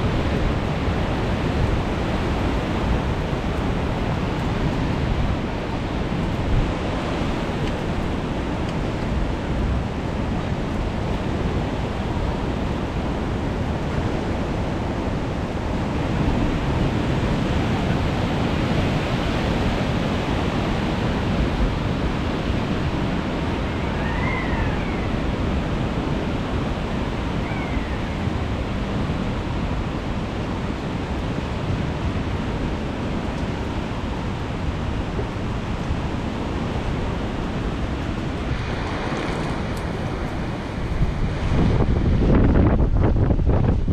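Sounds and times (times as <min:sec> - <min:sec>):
sea surf: 0:00.0 - 0:43.9
strong wind on microphone: 0:00.0 - 0:43.9
faint high calls: 0:23.5 - 0:25.4, 0:27.3 - 0:28.4.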